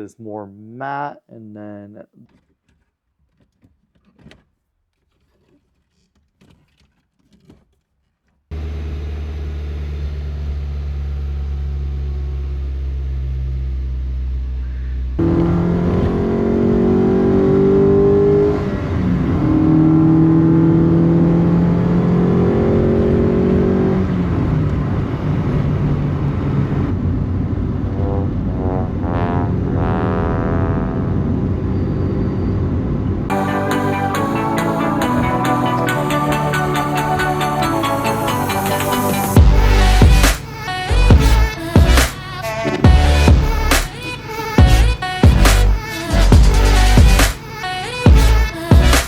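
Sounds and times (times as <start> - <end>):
car engine accelerating through gears: 8.5 - 27.0.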